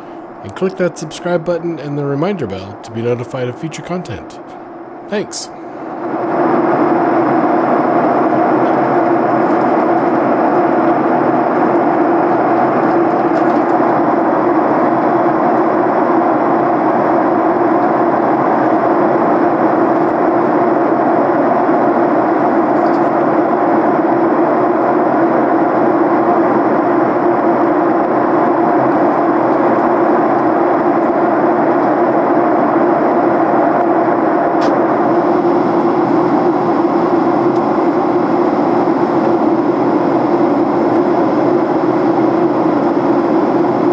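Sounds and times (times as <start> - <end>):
jet engine and airflow noise: 0.0 - 43.9.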